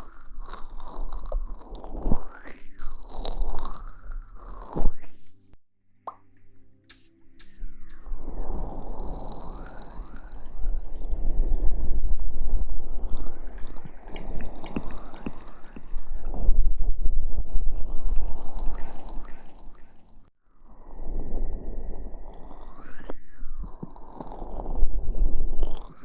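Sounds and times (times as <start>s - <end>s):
deep rumble: 7.2s - 19.3s.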